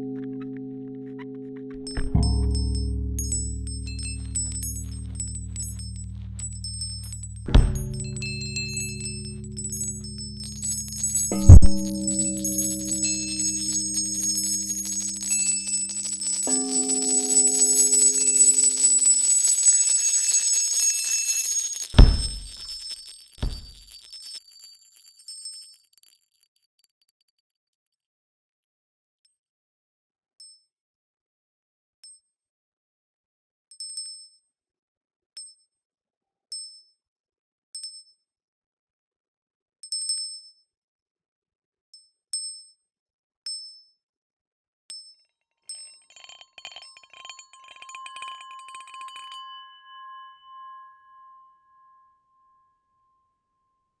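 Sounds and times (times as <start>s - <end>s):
small high-pitched bell dinging: 1.8s - 25.8s, 45.9s - 53.4s.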